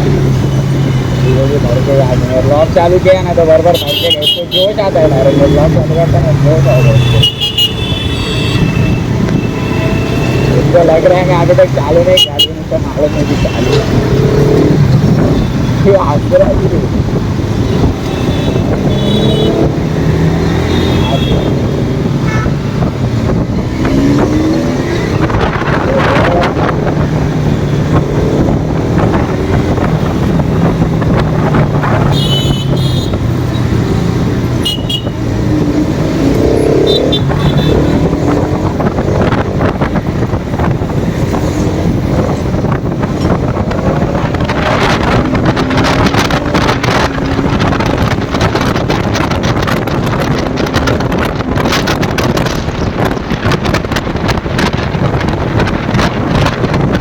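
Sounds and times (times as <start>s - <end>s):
vehicle horns beeping: 3.7s - 5.7s, 6.6s - 10.7s, 17.7s - 19.7s, 20.6s - 22.8s, 32.0s - 33.7s, 34.6s - 35.3s, 36.6s - 38.1s
motorcycle engine revving: 4.9s - 57.0s
wind buffeting microphone: 12.7s - 57.0s.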